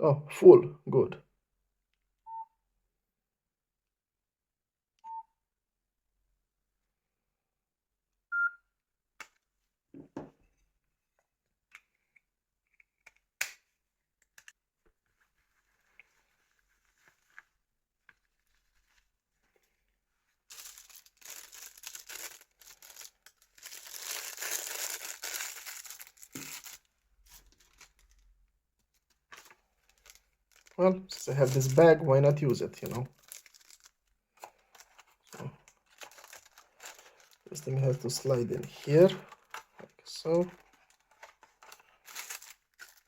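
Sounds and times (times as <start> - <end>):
plastic bag crinkling: 20.5 - 28.4, 29.0 - 43.0.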